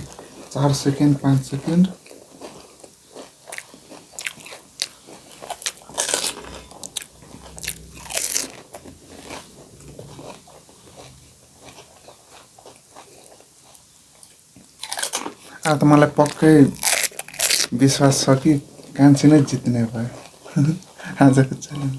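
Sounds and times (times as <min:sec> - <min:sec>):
crunching of crisp shells: 0:01.6 - 0:08.9, 0:11.0 - 0:17.9.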